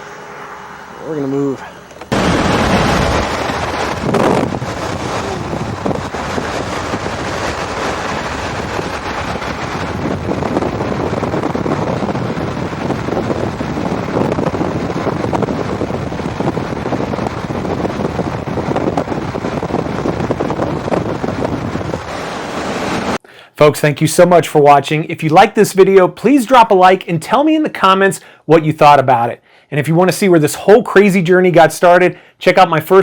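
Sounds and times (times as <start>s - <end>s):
wind buffeting microphone: 2.0s - 23.2s.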